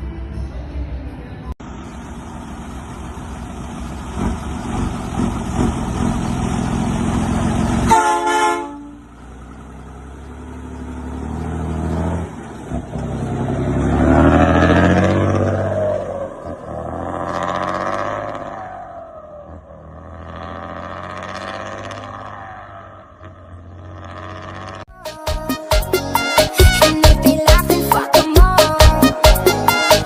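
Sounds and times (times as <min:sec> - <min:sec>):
diesel truck engine running: 0:01.6 - 0:25.0
engine revving: 0:02.8 - 0:24.9
horn toot: 0:07.8 - 0:09.0, 0:25.2 - 0:30.0.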